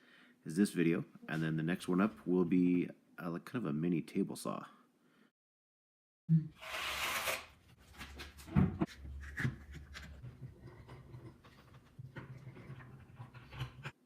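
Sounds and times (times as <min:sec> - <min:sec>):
plywood scraping on work surface: 0:06.7 - 0:14.0.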